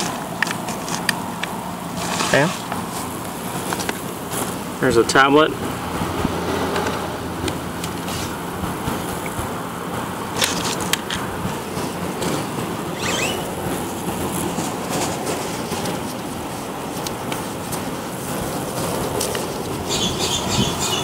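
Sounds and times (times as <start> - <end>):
outdoor background noise: 0.0 - 21.0
brief high squeak: 13.0 - 13.5.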